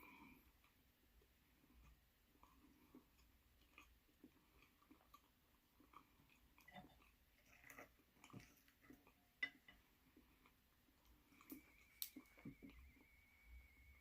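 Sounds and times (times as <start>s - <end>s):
person chewing food: 0.0s - 14.0s
faint high whine: 11.0s - 14.0s.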